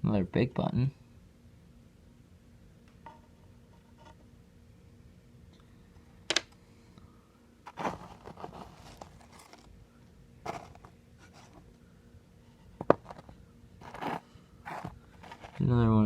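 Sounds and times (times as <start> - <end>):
rustling and clattering: 7.7 - 9.7, 10.4 - 11.7, 12.5 - 15.6.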